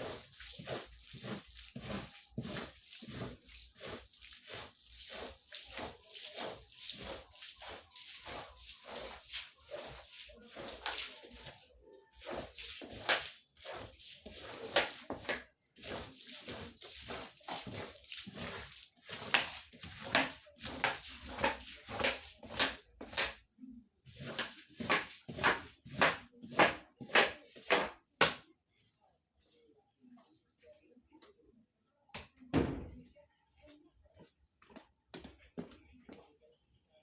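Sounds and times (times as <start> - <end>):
scrubbing wet carpet: 0.0 - 23.4, 24.0 - 28.0.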